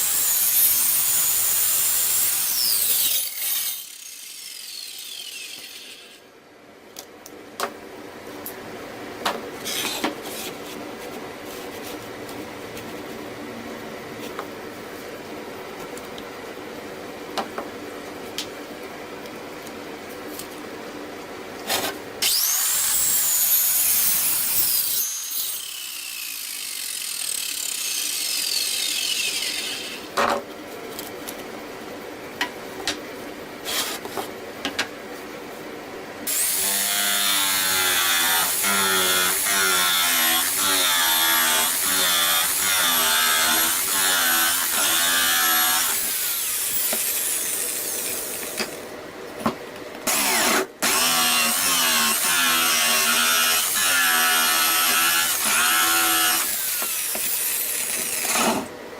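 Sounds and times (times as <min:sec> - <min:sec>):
power tool cutting wood: 0:00.0 - 0:06.2, 0:22.2 - 0:30.2, 0:36.3 - 0:48.6, 0:50.1 - 0:58.7.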